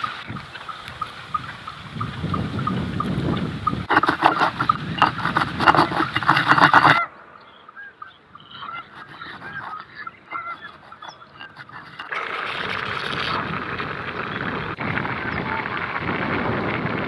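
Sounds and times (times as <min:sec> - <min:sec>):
farm fowl honking: 0:03.6 - 0:12.1.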